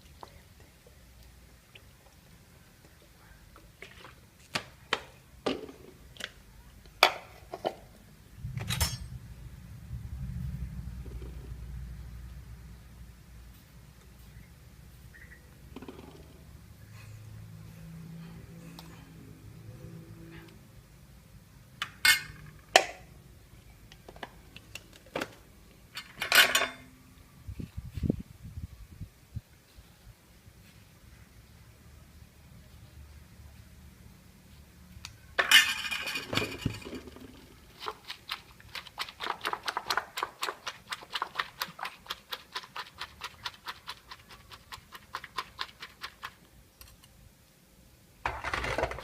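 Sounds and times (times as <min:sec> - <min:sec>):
low rumble: 0:08.3 - 0:12.9
utensils and dishes clinking: 0:08.6 - 0:09.2, 0:21.8 - 0:22.4, 0:26.0 - 0:26.9, 0:35.4 - 0:37.3.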